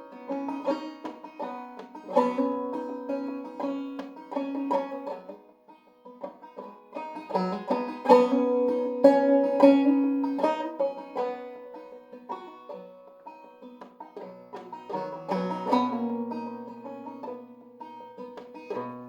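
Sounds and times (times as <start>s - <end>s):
banjo playing plucked notes: 0.0s - 19.0s.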